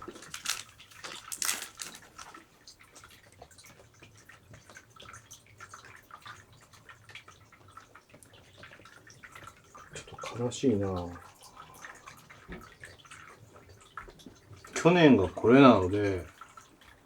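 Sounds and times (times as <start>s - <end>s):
decorations rustling and crinkling: 0.0s - 3.2s.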